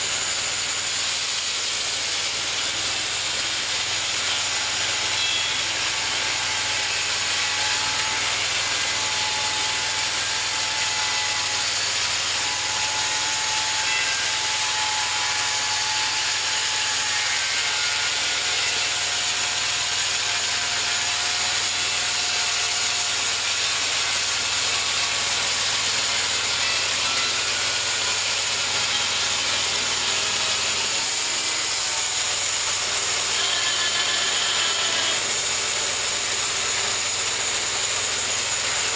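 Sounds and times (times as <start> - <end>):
bandsaw mill cutting log: 0.0 - 38.9.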